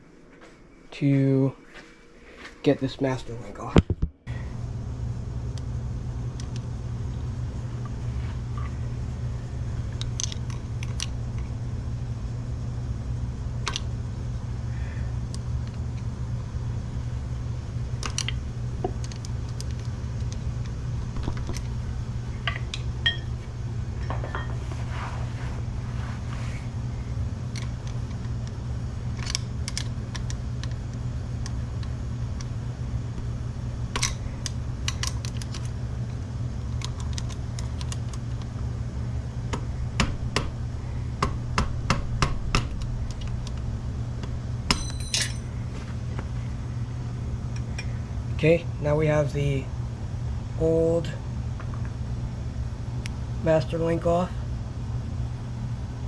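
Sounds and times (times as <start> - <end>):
steady low hum: 0.0 - 56.0
screwdriver and hammer tapping metal: 44.7 - 45.5.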